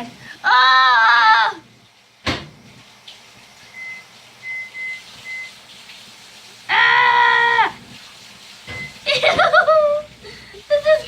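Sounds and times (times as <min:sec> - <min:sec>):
child squealing in disgust: 0:00.4 - 0:01.6, 0:06.7 - 0:07.8.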